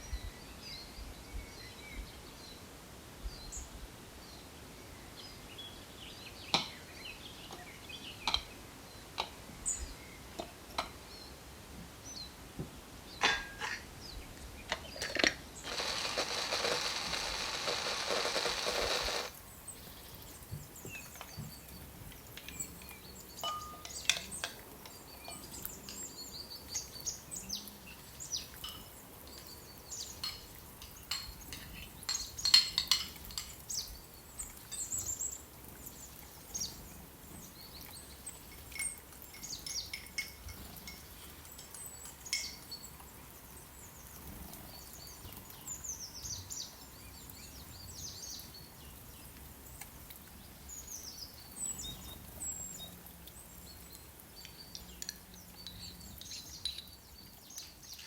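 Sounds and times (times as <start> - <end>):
rushing hiss: 15.7 - 19.4.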